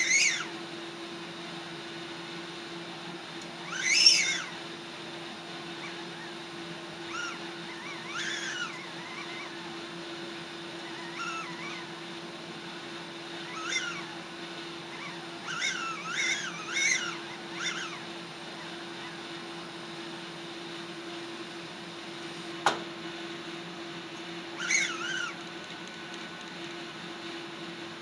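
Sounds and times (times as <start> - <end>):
cat meowing: 7.1 - 9.5.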